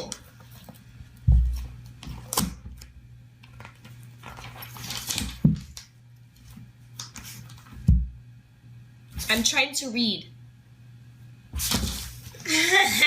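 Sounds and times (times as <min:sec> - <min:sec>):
paper rustling: 0:03.4 - 0:07.8, 0:11.6 - 0:12.5
cat pawing at paper: 0:11.6 - 0:12.4.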